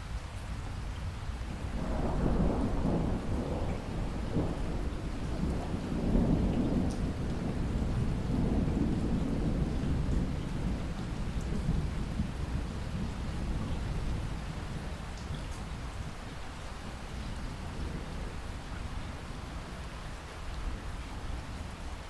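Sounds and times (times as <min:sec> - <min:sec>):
steady rain: 0:00.0 - 0:22.0
distant thunder rumbling: 0:01.7 - 0:15.0.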